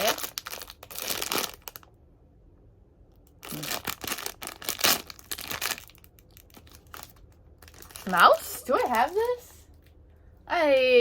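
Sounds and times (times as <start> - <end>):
packaging crinkling and tearing: 0.0 - 1.9, 3.3 - 9.9.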